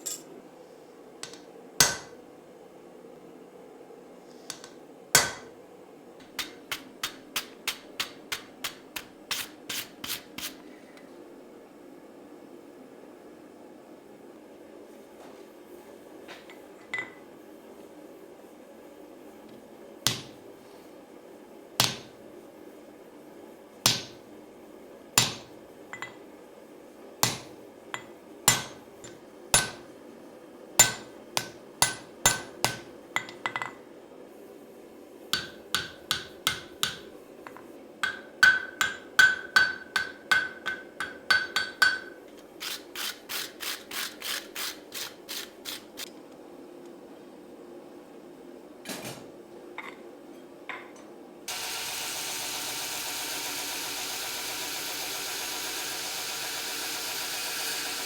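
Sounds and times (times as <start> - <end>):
hammer striking steel on anvil: 1.2 - 2.2, 4.5 - 5.5, 20.1 - 20.4, 21.8 - 22.2, 23.9 - 24.2, 25.2 - 26.1, 27.2 - 29.9, 30.8 - 33.7, 35.3 - 37.1, 38.0 - 42.2.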